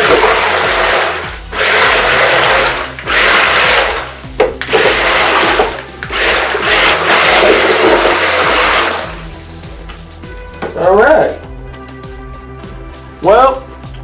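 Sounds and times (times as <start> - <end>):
water churning and splashing: 0.0 - 9.6.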